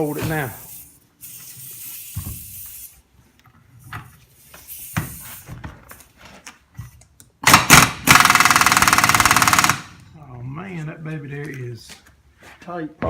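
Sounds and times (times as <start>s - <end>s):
impact wrench hammering: 7.4s - 10.0s.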